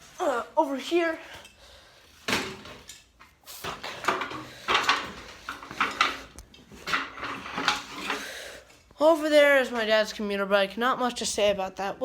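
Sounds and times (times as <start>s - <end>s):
objects knocking and scraping: 2.2s - 8.3s.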